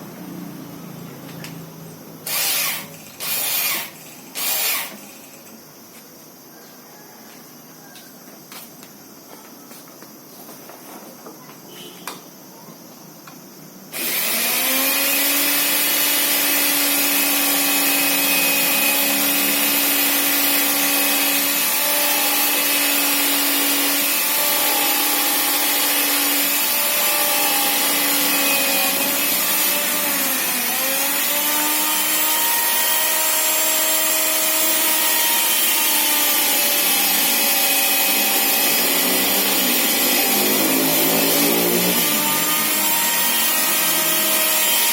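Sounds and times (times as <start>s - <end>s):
mitre saw motor whining: 2.2s - 5.5s, 13.9s - 44.9s.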